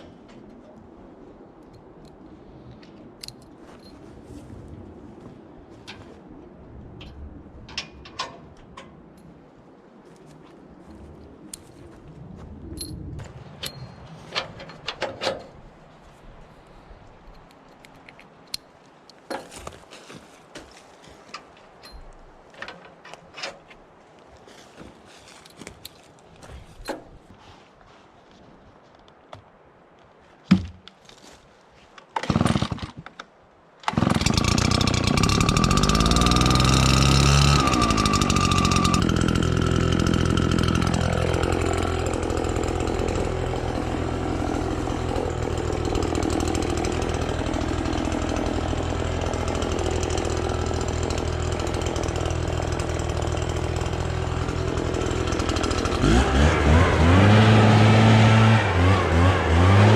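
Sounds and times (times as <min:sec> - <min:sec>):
small engine pull start: 0:32.2 - 0:33.0, 0:33.8 - 0:59.9
small gas engine running: 0:33.9 - 0:59.9.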